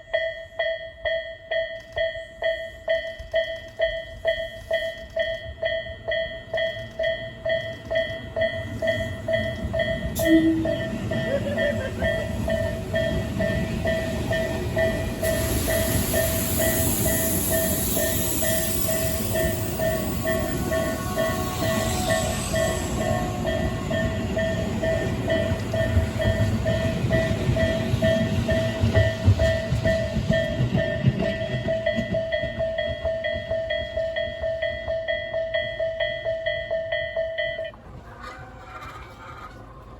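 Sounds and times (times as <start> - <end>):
electric train passing: 0.0 - 39.9
level crossing bell ringing: 5.4 - 15.1.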